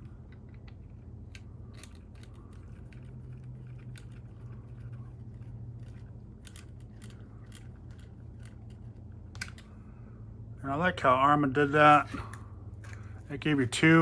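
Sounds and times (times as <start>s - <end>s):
small parts clicking and tapping: 0.0s - 9.8s
steady low hum: 0.0s - 14.0s.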